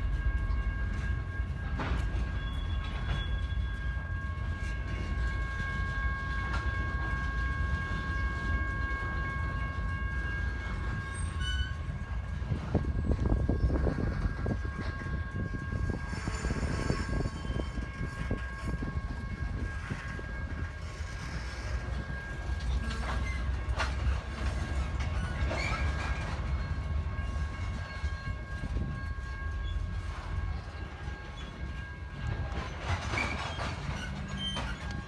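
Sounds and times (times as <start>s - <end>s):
train rumbling past: 0.0s - 35.0s
wheels clicking over rail joints: 0.1s - 35.0s.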